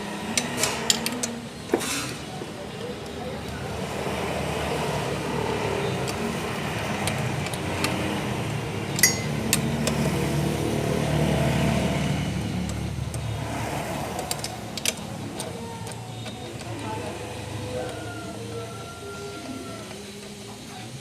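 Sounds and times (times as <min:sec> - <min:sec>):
sharp metallic clicks: 0:08.8 - 0:10.3.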